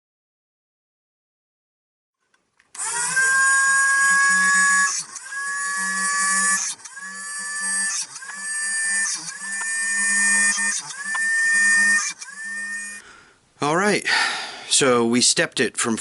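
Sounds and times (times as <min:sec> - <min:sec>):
electric drill motor whine: 0:02.8 - 0:13.0.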